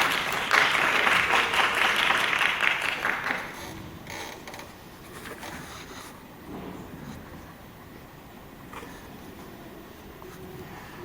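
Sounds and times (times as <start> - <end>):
audience applauding: 0.0 - 3.7.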